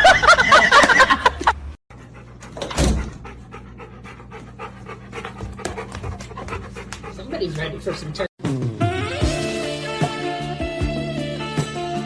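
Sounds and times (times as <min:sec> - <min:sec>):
dog panting: 0:01.9 - 0:08.3.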